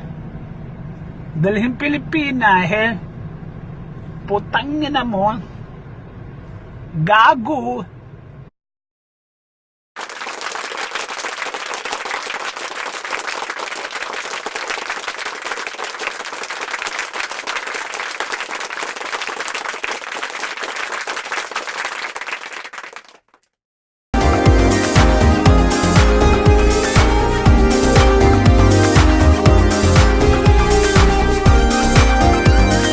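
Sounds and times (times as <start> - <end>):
crowd applause: 10.0 - 23.4.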